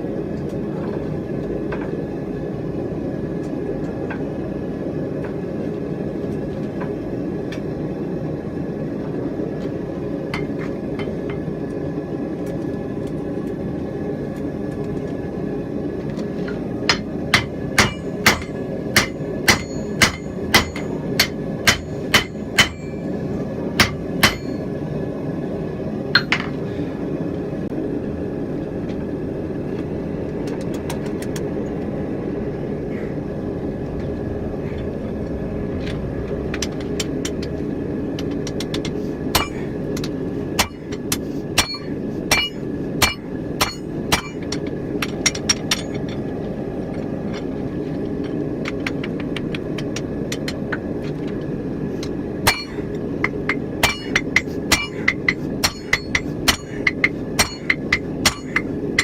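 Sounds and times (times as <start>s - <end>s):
hammer striking hot steel on anvil: 10.3s - 11.5s, 16.9s - 23.1s, 23.8s - 24.7s, 26.2s - 26.5s, 39.3s - 46.0s, 52.4s - 59.0s
steady rushing noise: 15.5s - 59.0s.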